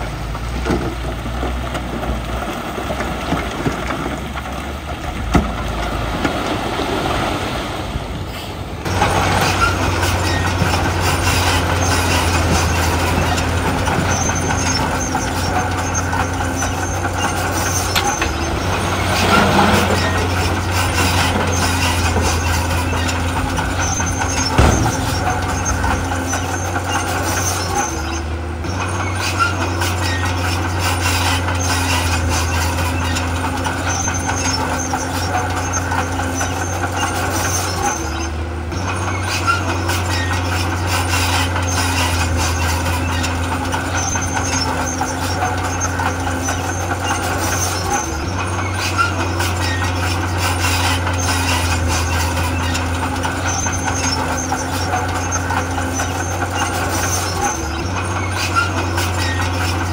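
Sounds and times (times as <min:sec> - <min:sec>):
heavy diesel machinery running: 0:00.0 - 0:59.9
clicks and knocks: 0:21.0 - 0:27.9.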